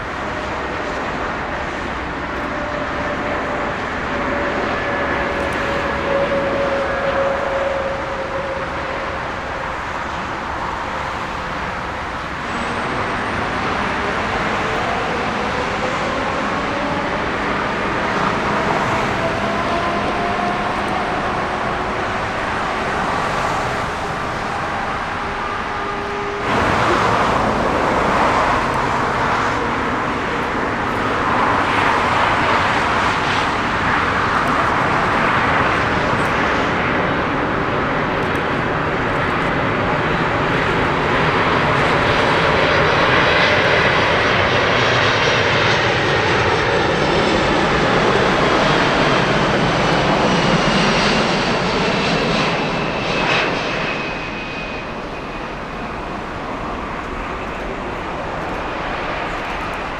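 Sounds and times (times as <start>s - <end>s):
jet engines rumbling: 0.0s - 59.9s.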